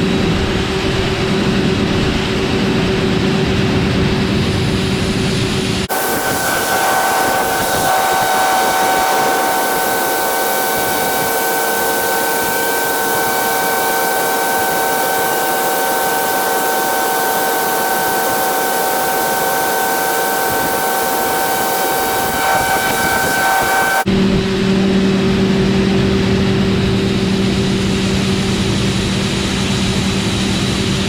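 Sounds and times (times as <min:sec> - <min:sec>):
high whine: 0:00.0 - 0:31.0
harvest machinery running: 0:00.1 - 0:24.1.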